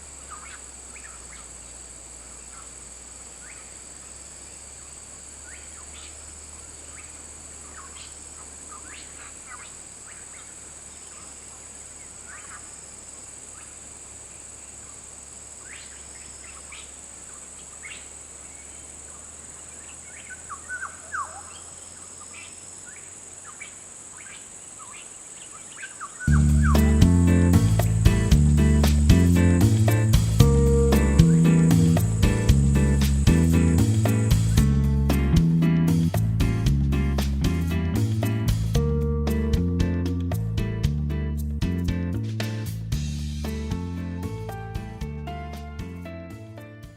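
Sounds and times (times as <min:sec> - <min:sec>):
steady high-pitched hiss: 0:00.0 - 0:46.9
birds chirping sharply: 0:05.4 - 0:12.8, 0:14.9 - 0:34.6.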